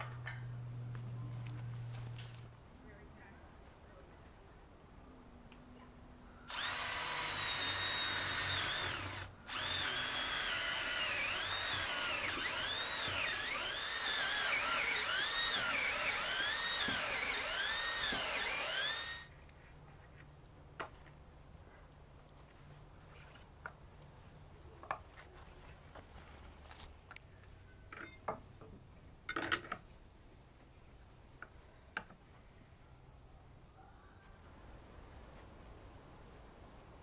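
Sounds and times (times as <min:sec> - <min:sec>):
power drill whining: 0:06.5 - 0:19.3.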